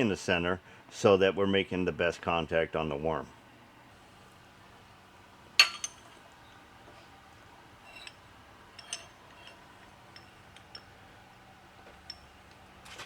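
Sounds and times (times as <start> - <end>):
metal parts and tools clinking: 5.6 - 6.2, 7.8 - 11.0, 11.9 - 13.0.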